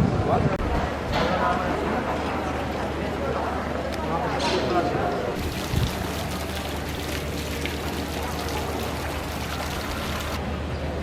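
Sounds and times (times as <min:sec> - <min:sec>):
running water splashing: 0:05.4 - 0:10.4.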